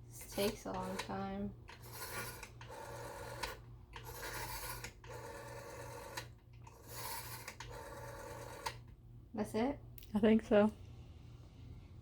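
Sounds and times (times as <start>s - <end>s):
rotary telephone dial whirring: 0.1s - 9.0s.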